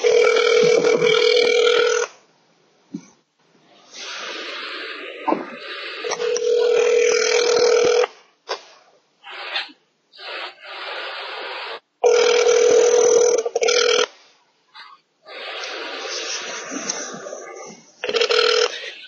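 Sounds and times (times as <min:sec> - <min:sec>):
girl snoring: 0:00.0 - 0:02.1, 0:04.0 - 0:08.1, 0:10.4 - 0:14.0, 0:15.3 - 0:18.9.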